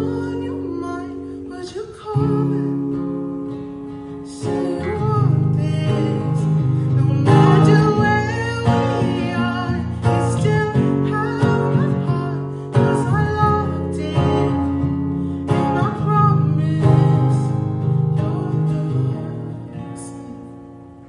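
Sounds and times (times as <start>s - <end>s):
acoustic guitar chords: 0.0s - 21.0s
person singing softly: 18.2s - 20.8s.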